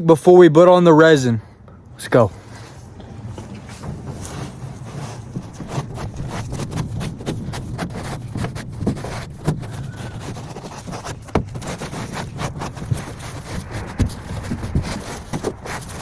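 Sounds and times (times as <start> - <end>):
hand scraping boat hull: 2.2 - 16.0
sharp knocks: 5.3 - 15.8.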